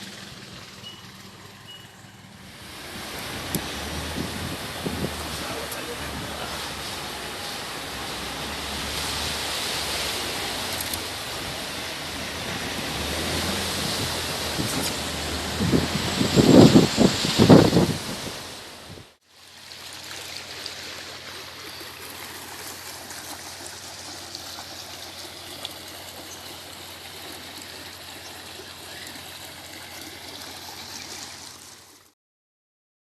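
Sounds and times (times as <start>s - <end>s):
water running steadily: 0.0s - 32.1s.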